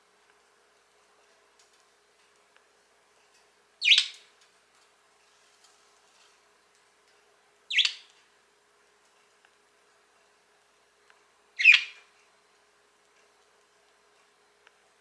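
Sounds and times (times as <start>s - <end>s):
budgerigar chirping: 3.8s - 4.2s, 7.7s - 8.1s, 11.6s - 12.0s.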